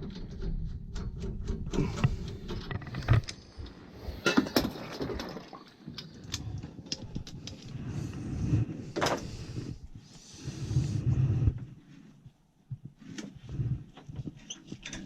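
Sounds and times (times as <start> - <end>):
low background rumble: 5.8 - 14.4.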